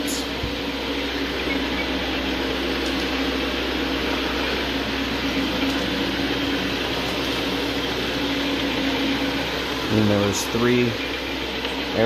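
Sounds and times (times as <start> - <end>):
carpet cleaning machine humming: 0.0 - 12.0.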